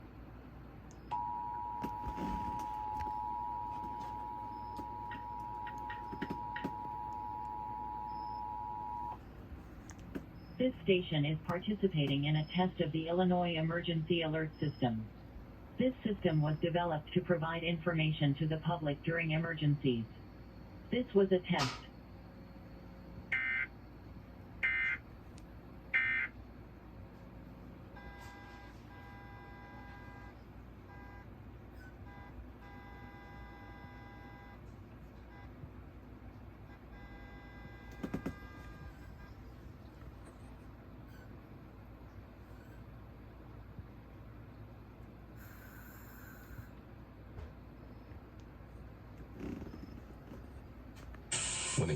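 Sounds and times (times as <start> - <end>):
two-tone attention signal: 1.1 - 9.2.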